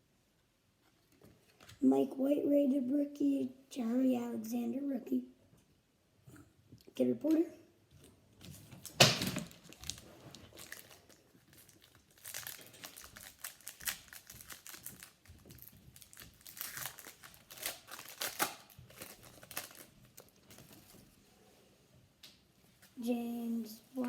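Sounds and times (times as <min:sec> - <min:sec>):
foil wrapper tearing and crinkling: 0:08.4 - 0:21.1.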